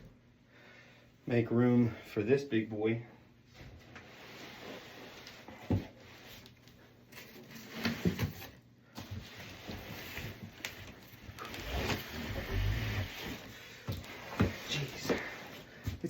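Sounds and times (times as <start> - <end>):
cardboard and packaging rustling: 4.8 - 16.0.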